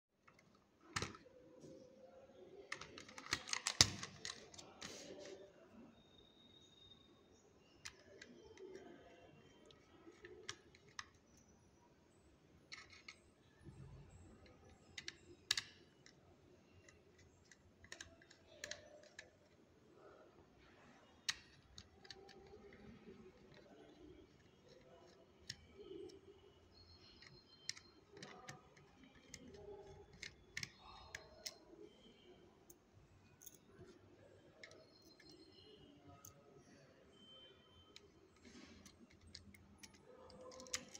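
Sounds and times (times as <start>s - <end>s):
plastic toy parts clicking: 2.7s - 5.0s, 12.7s - 13.2s, 14.4s - 16.2s, 16.8s - 19.6s, 21.2s - 26.2s, 27.0s - 31.7s, 38.0s - 40.9s.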